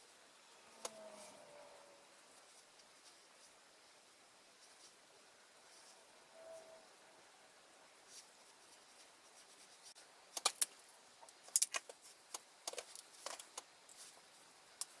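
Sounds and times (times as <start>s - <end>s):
small hard objects clicking and clattering: 10.3s - 14.1s.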